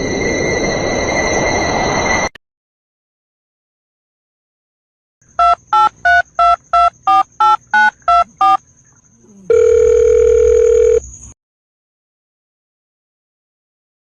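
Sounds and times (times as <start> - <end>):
telephone keypad beeps: 5.4 - 8.6, 9.5 - 11.0
telephone line tone: 5.4 - 8.6, 9.5 - 11.0.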